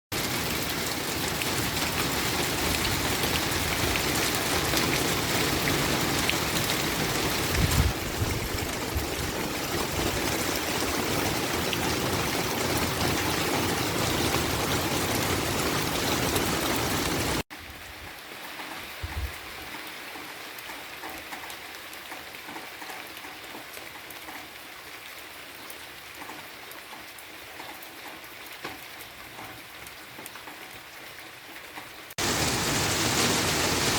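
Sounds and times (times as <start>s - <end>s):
rain falling: 0.1s - 33.9s.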